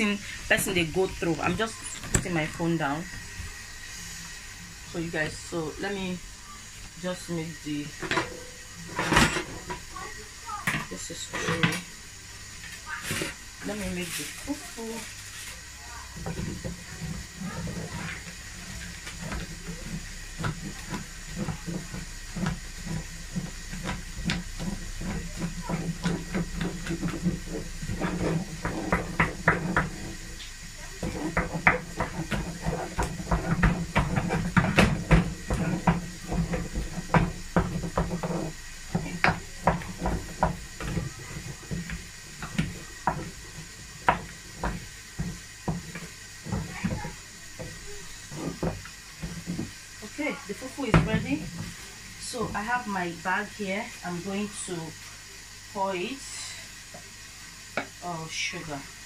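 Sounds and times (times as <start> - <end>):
spoon scraping a pot: 16.2 - 49.8.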